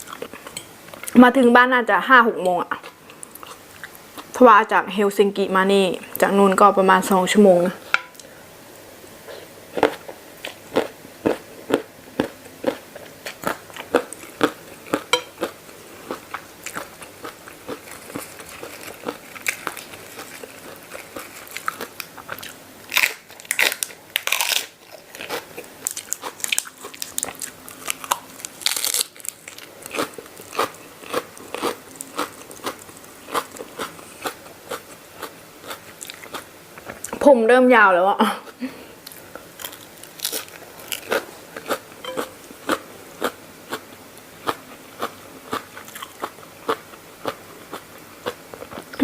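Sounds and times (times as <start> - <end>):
crunchy chewing: 9.3 - 37.1, 39.0 - 49.0.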